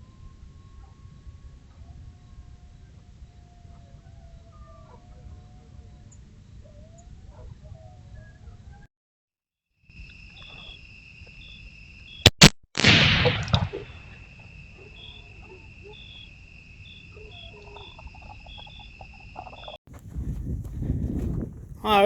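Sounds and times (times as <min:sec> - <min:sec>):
night insects trilling: 0:09.9 - 0:12.2, 0:13.8 - 0:19.8
rifle shot: 0:12.4 - 0:14.3.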